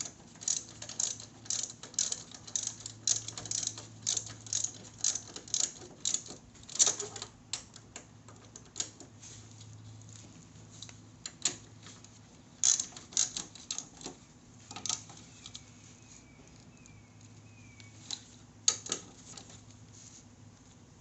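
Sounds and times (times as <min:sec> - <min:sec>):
ratchet wrench clicking: 0:00.0 - 0:07.7, 0:12.6 - 0:15.6
steady low hum: 0:00.0 - 0:21.0.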